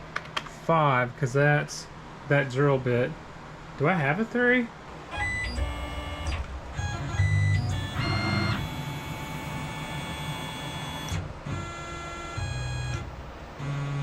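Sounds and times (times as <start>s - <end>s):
lathe motors whining: 5.1s - 14.0s.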